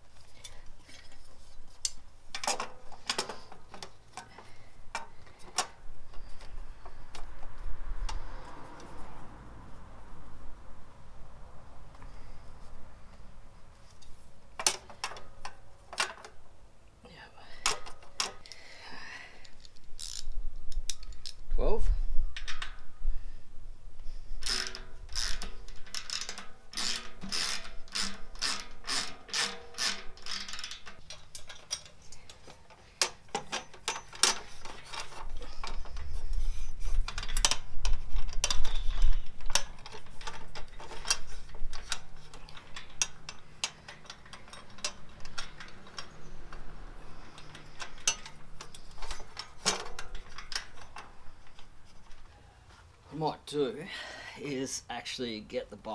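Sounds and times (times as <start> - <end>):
ratchet wrench clicking: 19.6 - 21.4, 24.4 - 32.3.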